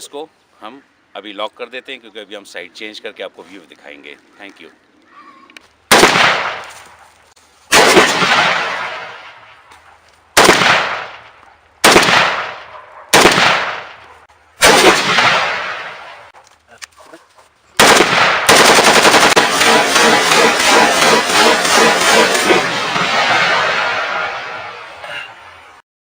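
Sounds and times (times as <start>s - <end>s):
rifle shots echoing: 5.9s - 6.9s, 7.7s - 9.7s, 10.4s - 16.3s, 17.8s - 25.0s.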